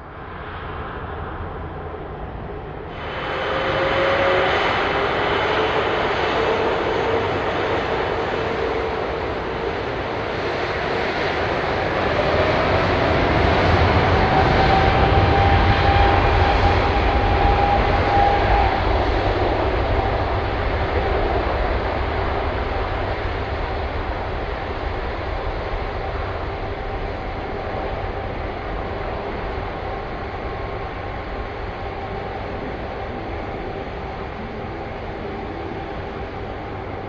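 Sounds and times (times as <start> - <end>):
jet engine whine rising: 0.0 - 37.0
jet engines roaring: 0.7 - 37.0.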